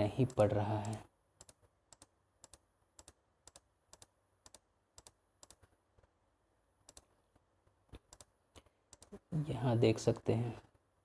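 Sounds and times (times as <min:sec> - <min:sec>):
laptop keys tapping: 0:00.2 - 0:06.1.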